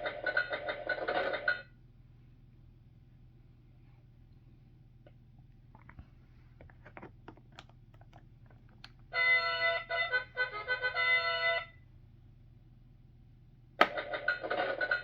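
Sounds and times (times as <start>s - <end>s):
electronic toy trumpet fanfare: 9.1s - 11.8s.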